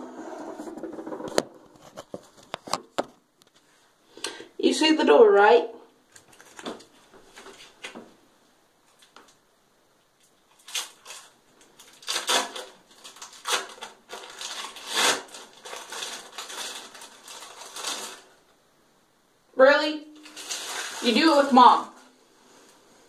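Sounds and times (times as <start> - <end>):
plastic packaging crinkling: 6.1 - 8.0, 10.2 - 18.6, 20.2 - 21.6.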